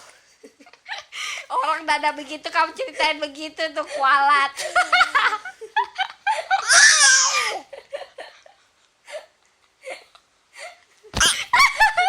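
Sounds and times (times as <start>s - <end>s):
laughter: 0.2s - 1.1s, 4.6s - 7.0s, 7.6s - 9.2s, 9.8s - 12.0s.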